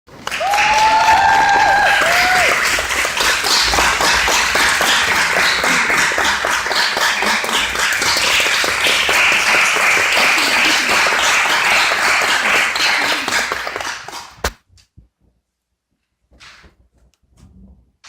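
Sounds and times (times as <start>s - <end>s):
audience applauding: 0.1s - 14.4s.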